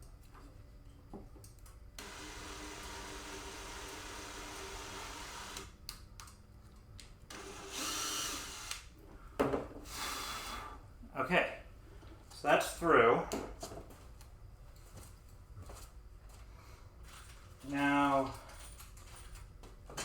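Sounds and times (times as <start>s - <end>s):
power drill drilling: 2.0s - 5.7s, 7.3s - 8.9s.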